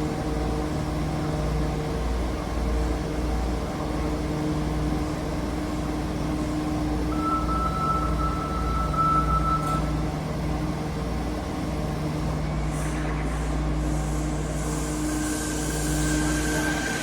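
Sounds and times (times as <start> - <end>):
train electrical hum: 0.0 - 17.0
rising train motor tone: 5.0 - 11.6, 13.3 - 17.0.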